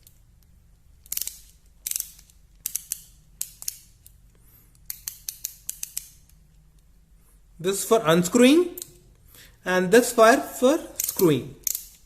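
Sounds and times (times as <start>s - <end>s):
ratchet screwdriver clicking: 1.0s - 4.1s, 4.7s - 6.4s, 11.0s - 12.0s.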